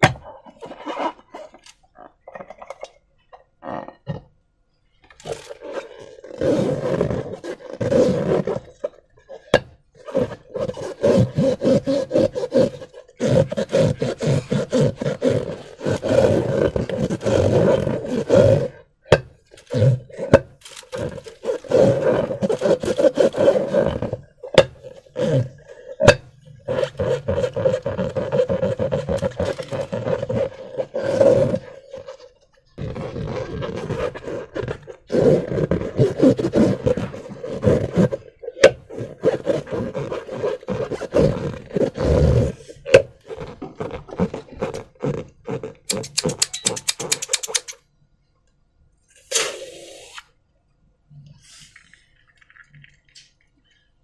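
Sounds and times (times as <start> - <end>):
rubber balloon rubbing: 0.0 - 2.5, 5.2 - 47.8, 49.2 - 50.3
slime squelching: 42.6 - 47.8
sharp clicks: 45.9 - 47.8.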